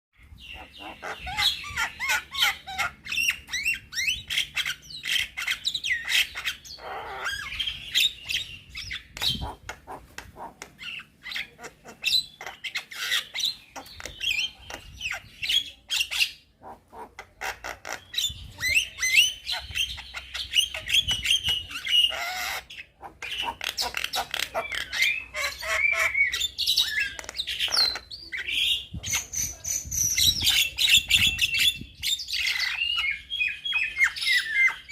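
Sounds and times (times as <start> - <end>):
myna bird singing: 0.2 - 34.9.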